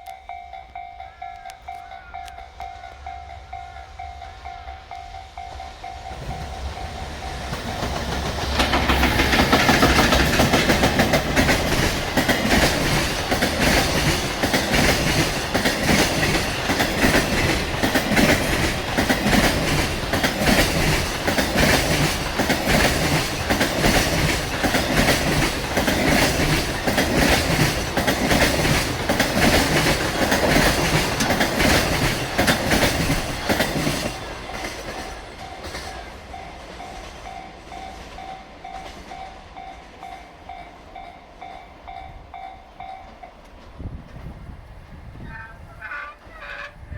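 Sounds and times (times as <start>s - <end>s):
train wheels clattering over rails: 4.0s - 46.9s.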